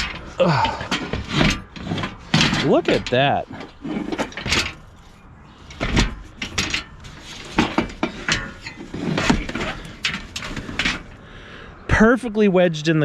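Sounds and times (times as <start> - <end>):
metal table knocking and scraping: 0.0 - 4.9, 5.7 - 11.2.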